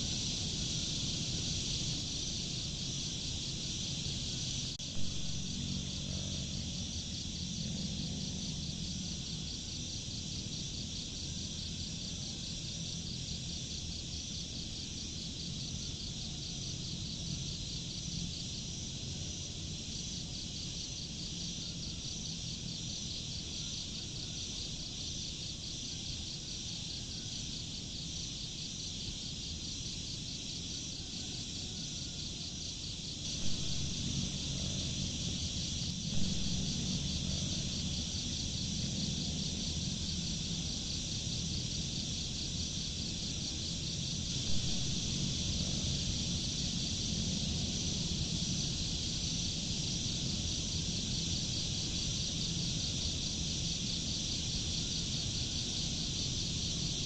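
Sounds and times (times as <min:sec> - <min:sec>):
insects trilling: 0:00.0 - 0:57.0
low rumble: 0:33.3 - 0:40.1, 0:44.2 - 0:48.3.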